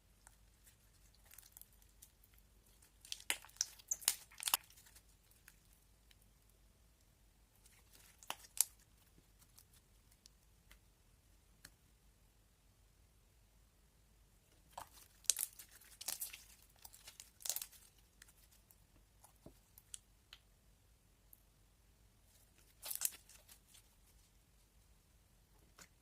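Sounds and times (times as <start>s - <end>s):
slime crackling and popping: 0.7s - 5.8s, 7.7s - 9.6s, 14.7s - 18.6s, 22.6s - 23.8s.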